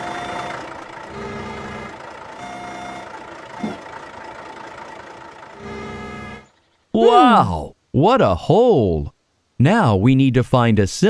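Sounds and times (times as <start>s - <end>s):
crane engine hum: 0.0s - 6.8s.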